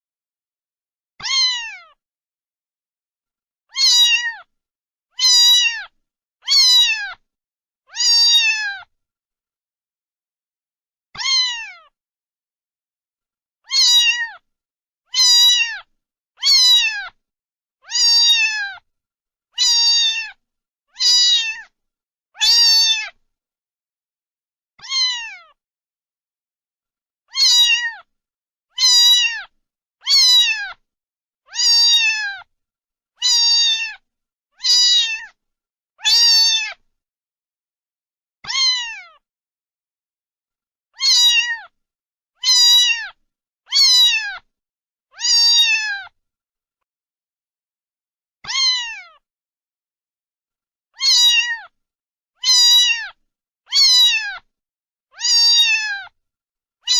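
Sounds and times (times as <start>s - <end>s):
cat meowing: 1.2s - 2.0s, 3.7s - 4.5s, 5.2s - 7.2s, 7.9s - 8.9s, 11.2s - 12.0s, 13.6s - 14.4s, 15.1s - 17.2s, 17.8s - 18.8s, 19.6s - 21.7s, 22.4s - 23.2s, 24.8s - 25.6s, 27.3s - 28.1s, 28.7s - 30.8s, 31.5s - 32.5s, 33.2s - 34.0s, 34.6s - 35.4s, 36.0s - 36.8s, 38.4s - 39.2s, 41.0s - 41.8s, 42.4s - 44.5s, 45.1s - 46.2s, 48.4s - 49.2s, 51.0s - 51.8s, 52.4s - 54.5s, 55.1s - 56.1s.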